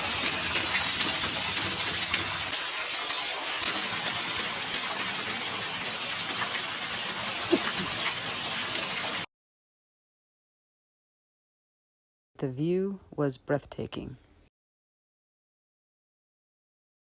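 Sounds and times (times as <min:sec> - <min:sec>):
water rushing and splashing: 0:00.0 - 0:09.3.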